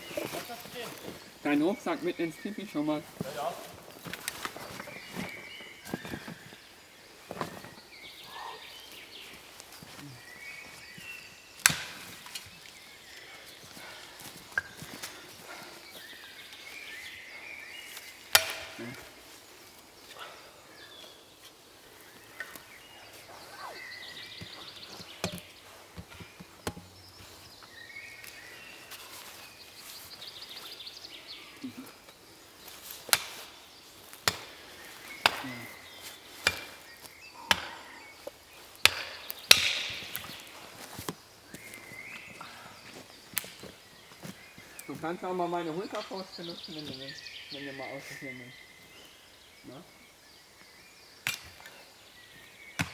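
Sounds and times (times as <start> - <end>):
axe chopping wood: 11.6 - 12.4, 18.3 - 19.0, 24.4 - 27.1, 33.1 - 37.9, 38.8 - 41.2, 51.2 - 51.7.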